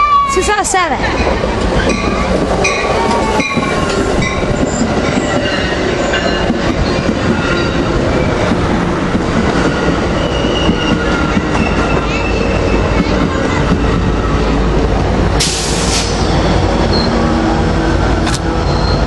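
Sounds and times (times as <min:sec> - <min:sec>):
train rumbling on track: 0:00.0 - 0:19.0
short hiss: 0:15.4 - 0:16.2.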